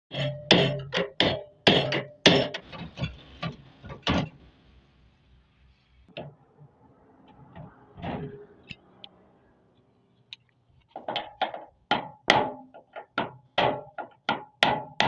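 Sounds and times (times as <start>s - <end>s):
hammer striking metal: 0.1s - 4.3s.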